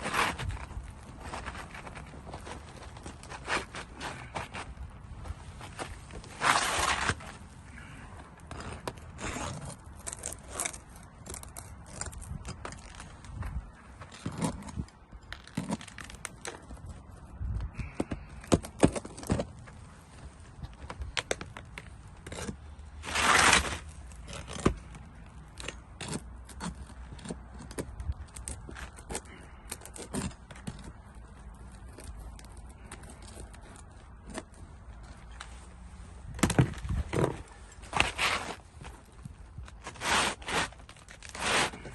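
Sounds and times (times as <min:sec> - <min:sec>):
rasp on shingles: 0:00.0 - 0:04.9, 0:05.6 - 0:13.4, 0:21.0 - 0:35.4, 0:36.4 - 0:41.9
clicks and knocks on shingles: 0:17.7 - 0:19.7.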